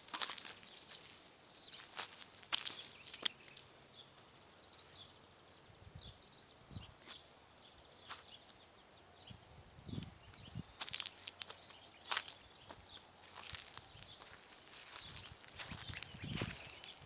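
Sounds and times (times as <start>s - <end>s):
footsteps on open ground: 0.0s - 5.1s, 6.8s - 8.8s, 9.9s - 17.0s.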